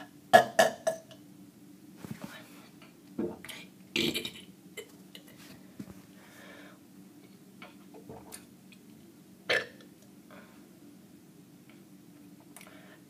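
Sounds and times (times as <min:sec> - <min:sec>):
person burping: 0:00.0 - 0:01.2, 0:04.0 - 0:04.5, 0:09.5 - 0:09.8.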